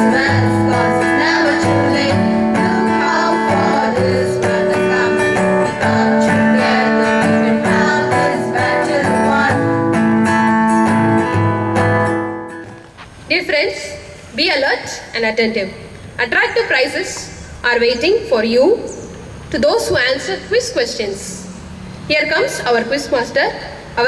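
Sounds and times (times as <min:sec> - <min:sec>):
acoustic guitar strumming chords: 0:00.0 - 0:12.9.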